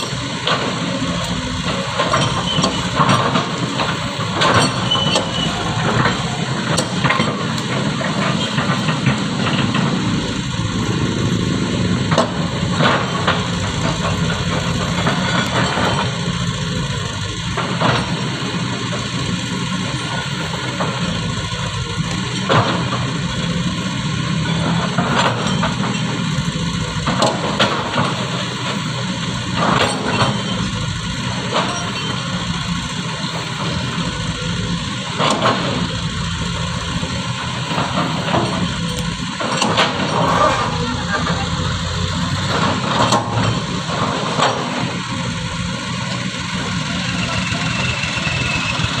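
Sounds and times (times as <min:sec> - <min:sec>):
excavator diesel engine running: 0:00.0 - 0:49.0
sharp knocks and clanks: 0:01.7 - 0:10.1, 0:37.6 - 0:45.0.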